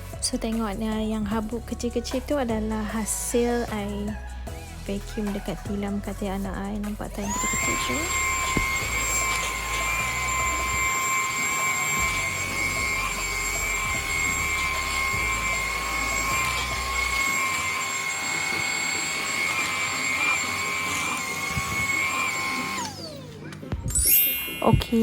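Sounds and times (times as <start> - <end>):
vacuum motor whining: 7.1 - 25.0.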